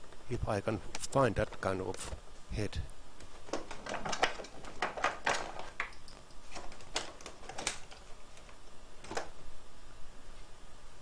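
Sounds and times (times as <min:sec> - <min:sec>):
clatter of small hard items: 0:03.3 - 0:09.3.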